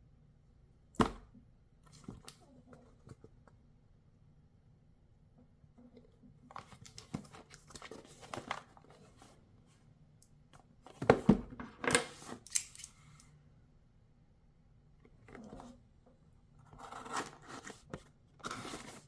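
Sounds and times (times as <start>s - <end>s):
packaging crinkling and rustling: 6.5s - 9.2s.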